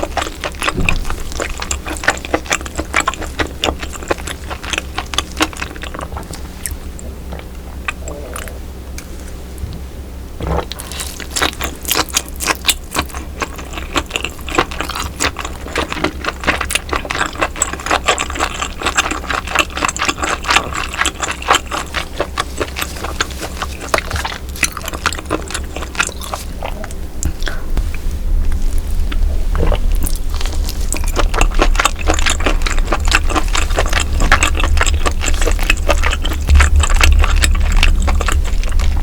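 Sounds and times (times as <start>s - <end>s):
mouth chewing clicks and smacks: 10.6s - 27.8s, 29.0s - 39.0s.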